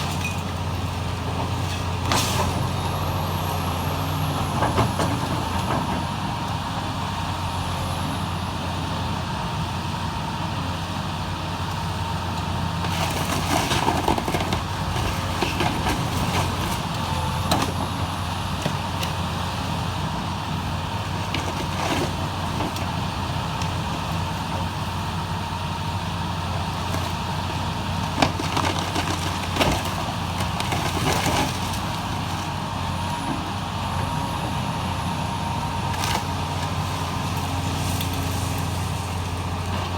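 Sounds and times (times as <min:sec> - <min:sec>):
heavy diesel machinery running: 0:00.0 - 0:39.9
building debris crashing: 0:12.6 - 0:32.9.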